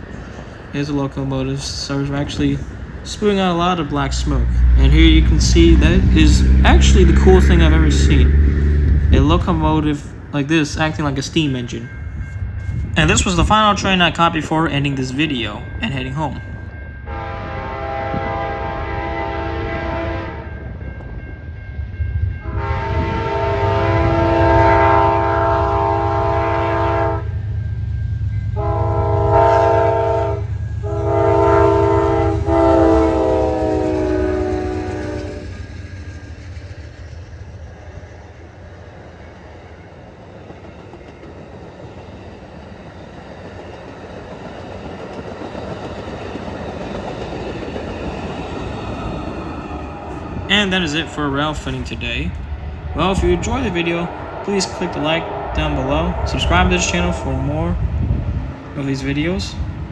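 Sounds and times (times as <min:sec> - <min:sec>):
diesel engines rumbling: 0:00.0 - 0:16.6, 0:46.1 - 0:59.9
locomotive air horn: 0:17.1 - 0:20.4, 0:22.4 - 0:27.3, 0:28.6 - 0:35.6
train wheels clickety-clack: 0:39.2 - 0:49.6.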